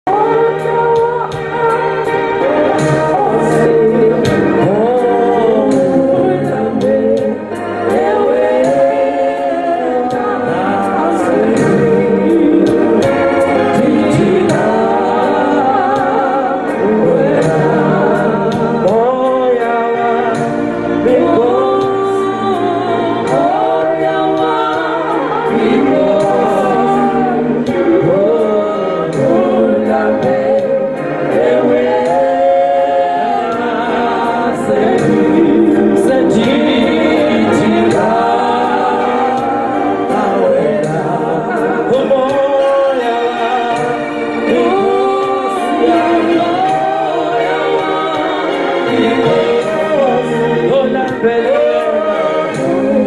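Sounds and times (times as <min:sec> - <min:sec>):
gospel choir singing: 0:00.0 - 0:53.0.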